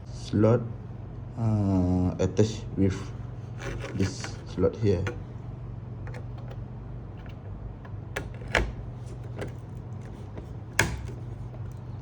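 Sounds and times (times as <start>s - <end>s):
steady low hum: 0.0s - 12.0s
computer parts clicking and knocking: 3.6s - 5.3s, 6.0s - 11.8s.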